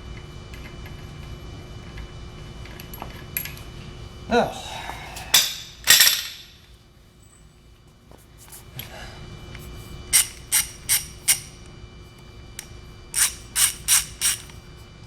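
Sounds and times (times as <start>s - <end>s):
ratchet pawl clicking: 10.2s - 11.6s, 13.2s - 14.6s.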